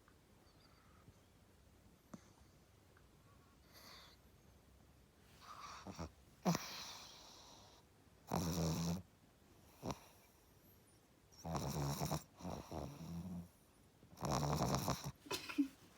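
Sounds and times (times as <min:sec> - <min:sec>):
quiet breathing: 0:00.4 - 0:01.4, 0:02.0 - 0:04.6.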